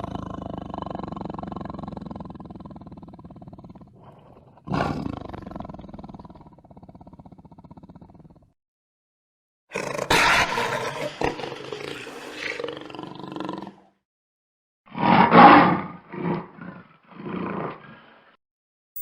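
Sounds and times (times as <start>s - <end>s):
jaguar roaring and snarling: 0.0s - 6.6s, 9.7s - 13.8s, 14.9s - 18.4s.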